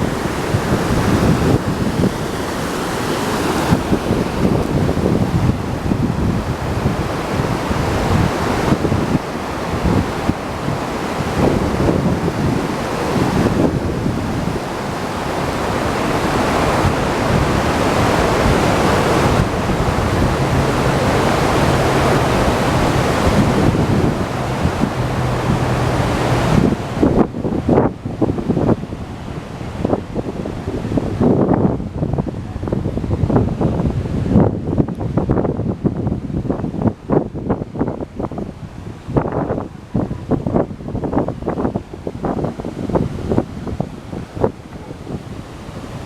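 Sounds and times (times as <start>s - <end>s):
waterfall rushing: 0.0s - 34.4s
wind buffeting microphone: 0.0s - 46.0s.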